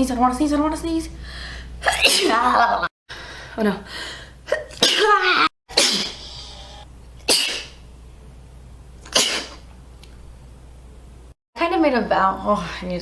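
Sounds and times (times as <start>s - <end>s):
woman sneezing: 1.8s - 2.4s, 4.6s - 6.2s, 7.3s - 7.8s, 9.1s - 9.6s.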